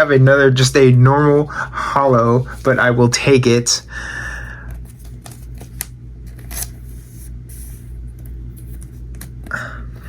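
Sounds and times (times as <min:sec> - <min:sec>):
cards clicking and rustling: 0:04.7 - 0:09.6.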